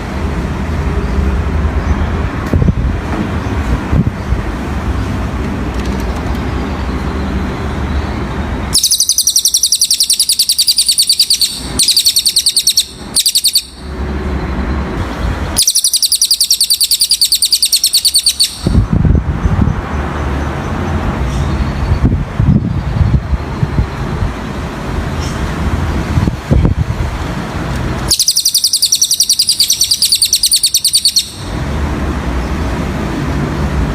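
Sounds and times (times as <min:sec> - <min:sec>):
bird trilling: 0:08.7 - 0:13.9, 0:15.5 - 0:18.9, 0:28.1 - 0:31.5.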